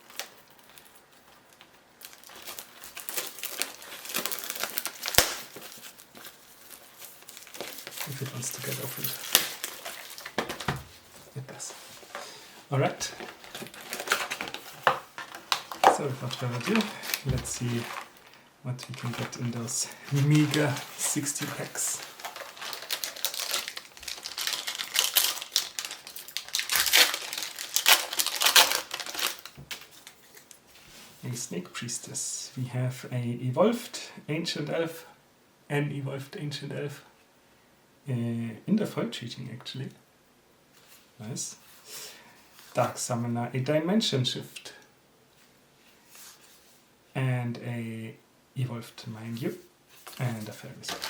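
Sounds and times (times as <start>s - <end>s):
plastic wrap snapping: 0.0s - 10.8s, 13.1s - 30.6s
plastic shrink wrap crinkling: 0.0s - 30.9s, 49.9s - 51.0s.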